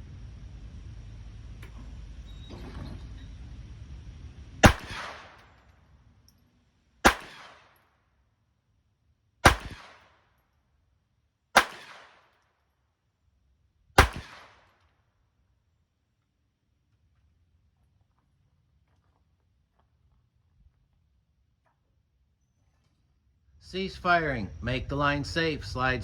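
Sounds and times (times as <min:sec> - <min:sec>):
pistol shots: 0:04.6 - 0:05.6, 0:07.0 - 0:07.8, 0:09.4 - 0:10.2, 0:11.6 - 0:12.4, 0:14.0 - 0:14.7.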